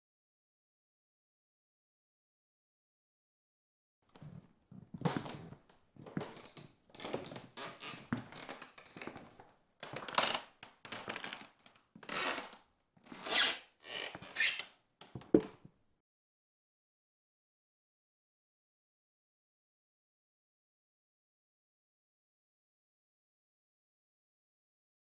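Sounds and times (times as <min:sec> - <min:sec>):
creaks and scrapes: 0:04.1 - 0:15.5.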